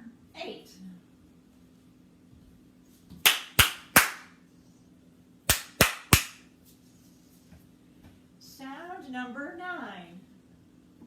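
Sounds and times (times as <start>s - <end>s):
hands clapping: 3.2s - 4.3s, 5.5s - 6.4s.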